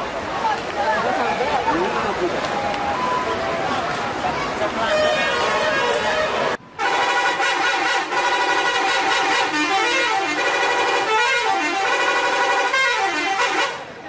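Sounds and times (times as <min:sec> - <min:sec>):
multi-tone air horn melody: 0:04.9 - 0:13.9.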